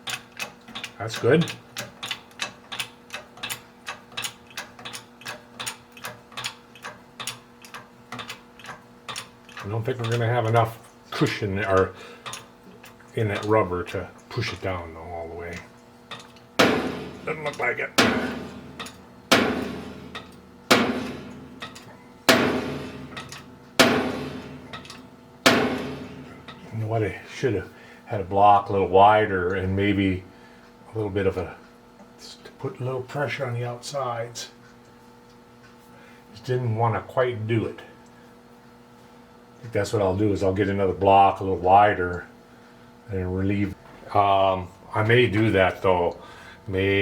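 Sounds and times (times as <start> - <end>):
hydraulic jack pump clicking: 0.0 - 14.8, 15.5 - 26.8
faint steady hum: 0.0 - 47.0
hammer striking metal: 16.6 - 26.8.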